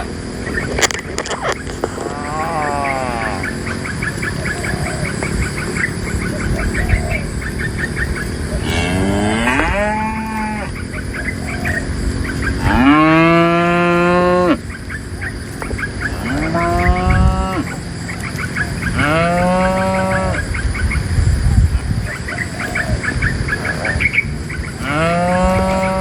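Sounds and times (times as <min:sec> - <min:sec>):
cows mooing: 0:01.2 - 0:21.2, 0:21.8 - 0:26.0.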